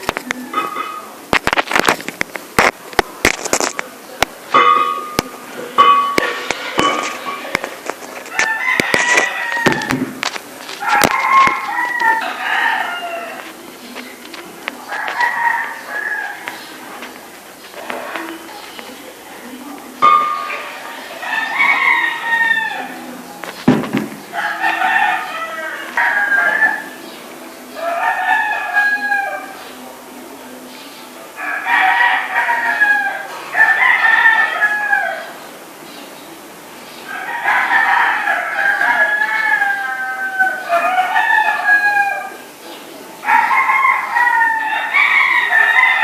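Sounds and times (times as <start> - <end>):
rooster crowing: 8.3 - 10.2, 10.8 - 13.6, 14.9 - 16.8, 20.2 - 23.2, 24.2 - 27.0, 27.8 - 29.6, 31.4 - 35.4, 37.1 - 42.5, 43.2 - 46.0
sharp knock: 23.7 - 24.2.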